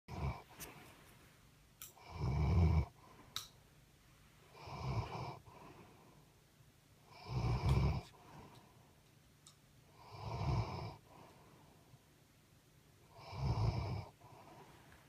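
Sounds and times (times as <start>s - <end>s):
heavy snoring: 0.1s - 0.5s, 2.0s - 3.0s, 4.6s - 5.4s, 7.1s - 8.2s, 10.0s - 11.0s, 13.1s - 14.5s
quiet breathing: 0.1s - 9.1s, 9.9s - 12.2s, 13.0s - 15.0s.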